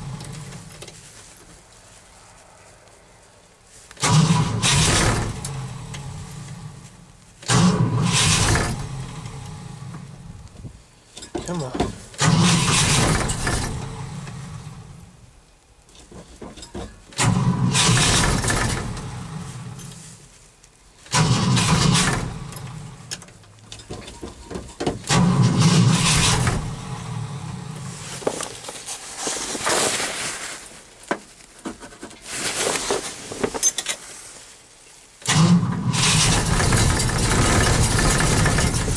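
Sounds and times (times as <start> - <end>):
engine cranking on starter: 4.0 - 6.8, 7.4 - 10.4, 11.9 - 14.9, 17.1 - 20.0, 21.1 - 24.4, 25.0 - 27.9, 35.2 - 38.9.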